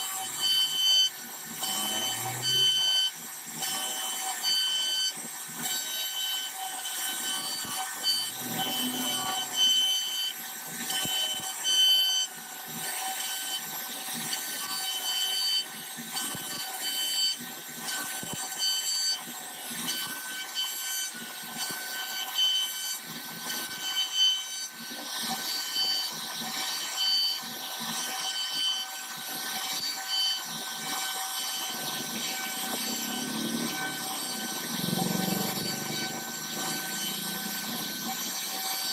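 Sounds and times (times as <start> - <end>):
router spindle whining: 0.0 - 12.3, 25.2 - 38.9.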